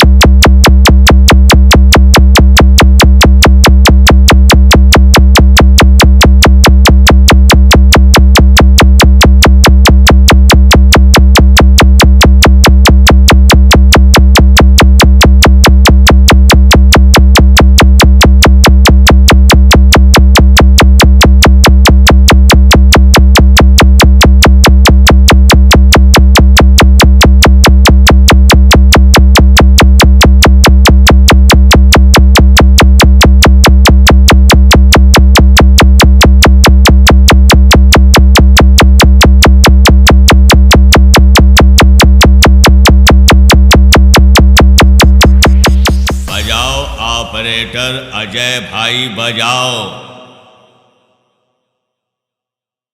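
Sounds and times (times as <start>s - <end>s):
drum machine beat: 8.0s - 19.1s, 44.3s - 50.8s
heavy deep bass: 45.0s - 51.0s.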